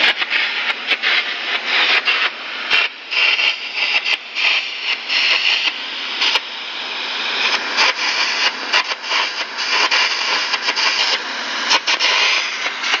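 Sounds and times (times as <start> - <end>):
sharp crackling pops: 0.0 - 6.5
arc torch hissing: 0.0 - 13.0.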